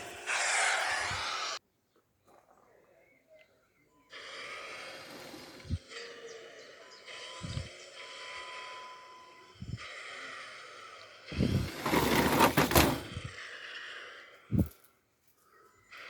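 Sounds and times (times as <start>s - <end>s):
small electric motors whirring: 0.0s - 1.6s, 4.1s - 13.5s
loud rattling clatter: 11.4s - 13.3s.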